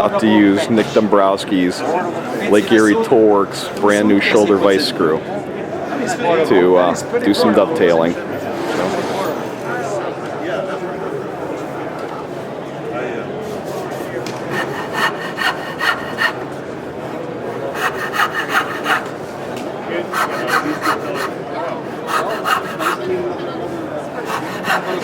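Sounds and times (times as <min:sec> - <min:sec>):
hand saw cutting wood: 0:14.0 - 0:16.5, 0:17.5 - 0:19.2, 0:20.0 - 0:23.3, 0:24.1 - 0:25.0.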